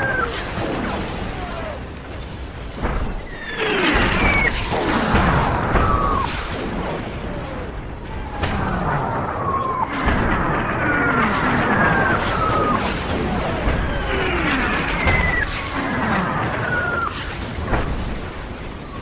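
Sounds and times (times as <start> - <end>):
continuous low rumble: 0.0 - 19.0
explosions: 0.0 - 19.0
incoming shell whistles: 3.2 - 4.8, 14.8 - 17.3.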